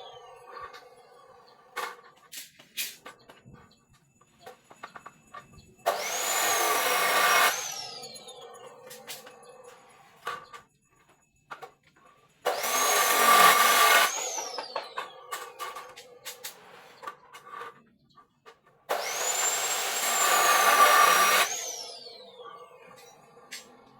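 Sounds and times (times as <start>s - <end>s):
electric power tool whining: 0.0s - 1.0s, 5.9s - 9.5s, 12.5s - 16.6s, 18.9s - 23.8s.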